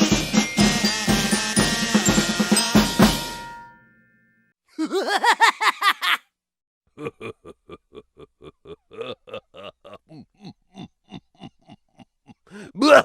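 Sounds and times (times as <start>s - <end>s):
drum kit fill: 0.0s - 3.7s
cymbal ringing: 0.0s - 4.0s.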